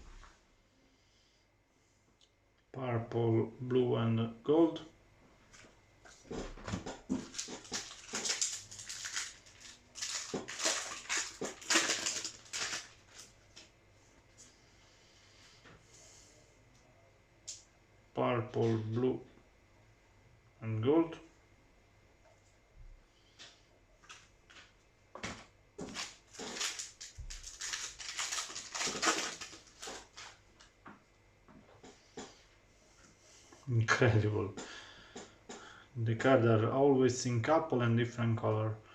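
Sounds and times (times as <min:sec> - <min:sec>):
foil pack crinkling and tearing: 0:06.8 - 0:13.7, 0:25.8 - 0:30.7.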